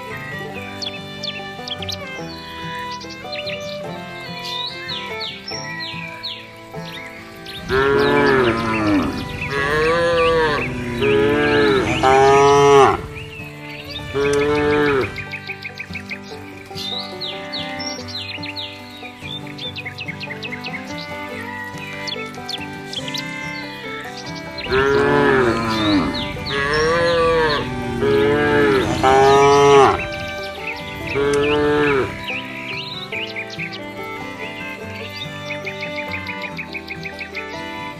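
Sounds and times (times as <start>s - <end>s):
cow mooing: 7.6s - 13.2s, 13.9s - 15.2s, 24.6s - 30.4s, 31.0s - 32.4s.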